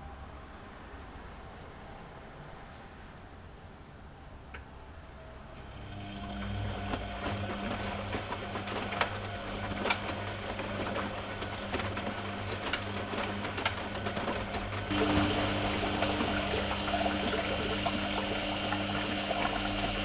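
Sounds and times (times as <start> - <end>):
washing machine motor hum: 5.4 - 20.0
water rushing: 14.8 - 20.0.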